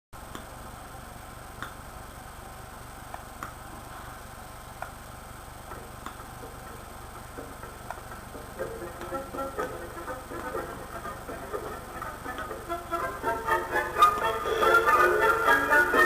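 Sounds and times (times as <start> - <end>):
low electrical hum: 0.2 - 16.0
music: 7.6 - 16.0.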